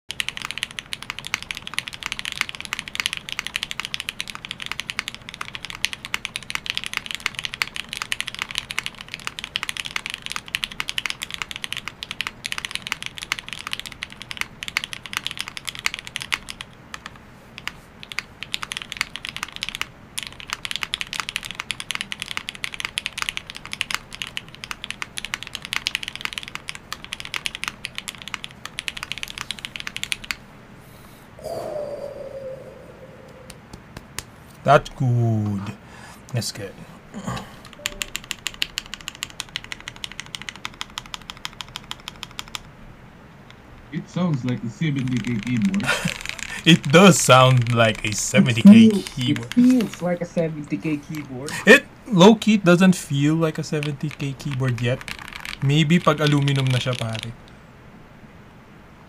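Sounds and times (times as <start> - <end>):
mechanical keyboard typing: 0.1 - 30.4, 37.6 - 42.7, 44.4 - 50.1, 52.8 - 57.4.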